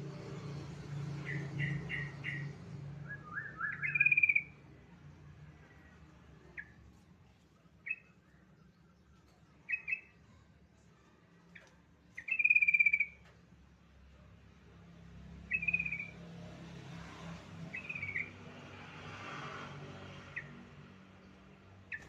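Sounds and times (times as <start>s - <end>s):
bird chattering calls: 3.7s - 4.5s, 12.2s - 13.2s.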